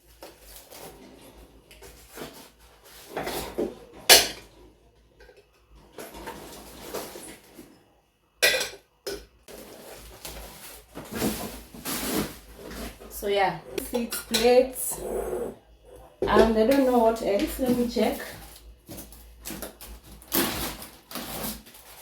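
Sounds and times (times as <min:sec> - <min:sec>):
handling noise: 0:09.6 - 0:22.0.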